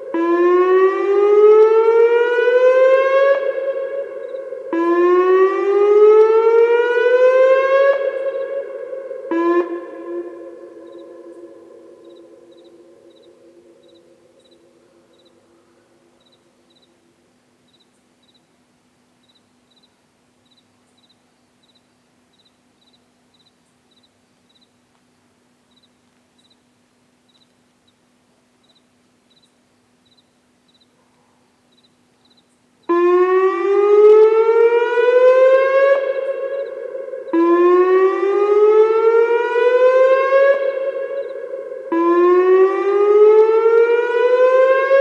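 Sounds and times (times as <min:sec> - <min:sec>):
warning siren whoop: 0:00.0 - 0:14.1, 0:32.9 - 0:45.0
crickets chirping: 0:04.2 - 0:04.7, 0:10.2 - 0:17.0, 0:17.6 - 0:18.6, 0:19.2 - 0:24.8, 0:25.7 - 0:31.0, 0:31.6 - 0:32.6.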